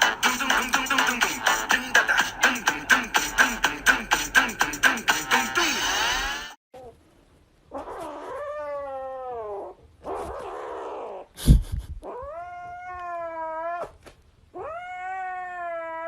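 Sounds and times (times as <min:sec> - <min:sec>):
cat yowling: 0:07.7 - 0:11.3, 0:12.0 - 0:16.0.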